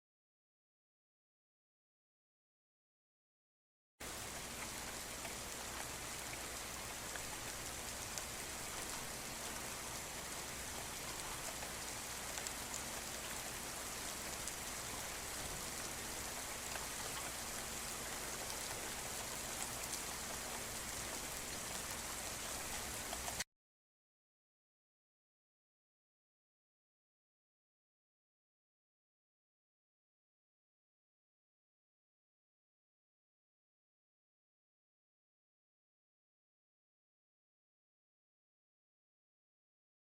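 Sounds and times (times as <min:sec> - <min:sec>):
steady rain falling: 0:04.0 - 0:23.4
ticks of raindrops: 0:04.0 - 0:23.4.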